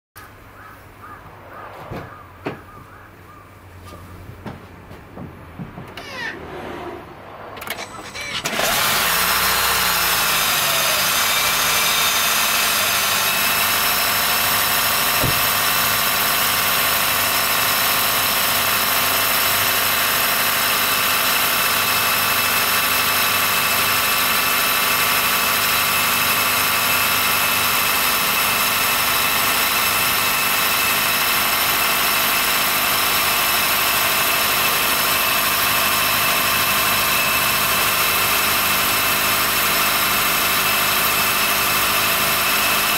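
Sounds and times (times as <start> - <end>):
car engine starting and running: 0.6 - 27.9
high-pitched squealing whine: 6.0 - 12.3.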